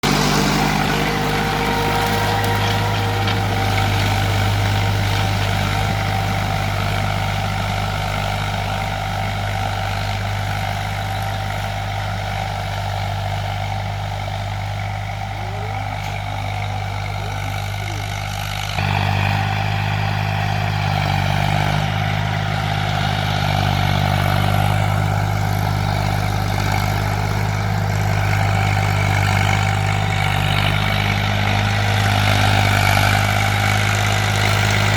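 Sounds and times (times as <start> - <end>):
diesel tractor engine running: 0.0 - 34.9.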